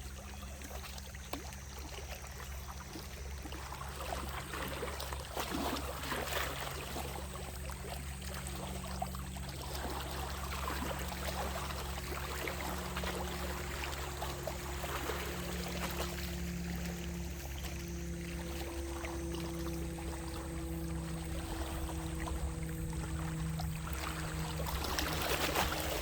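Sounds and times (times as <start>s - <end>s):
faint steady hum: 0.0s - 26.0s
sea waves splashing on shore: 18.4s - 26.0s.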